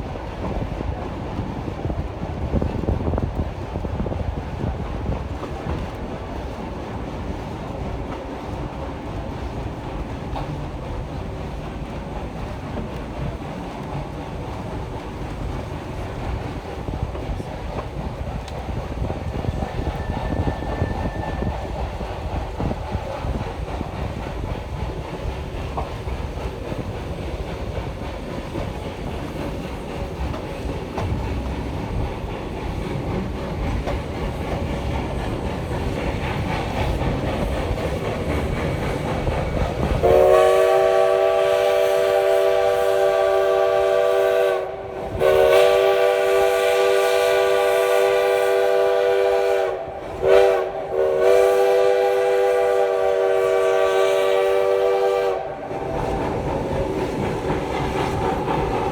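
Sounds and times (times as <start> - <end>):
train rumbling along track: 0.0 - 58.9
wheels clicking over rail joints: 0.1 - 40.2
steam locomotive whistle blasts: 19.7 - 21.8, 40.0 - 55.9.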